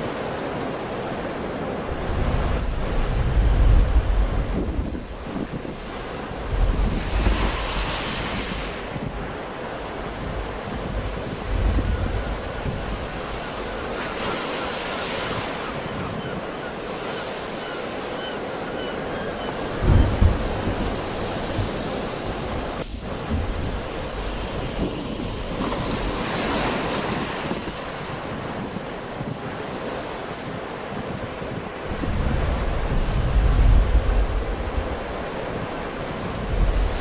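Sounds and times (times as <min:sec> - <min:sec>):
sea waves breaking on shore: 0:00.0 - 0:37.0
wind buffeting microphone: 0:00.0 - 0:37.0.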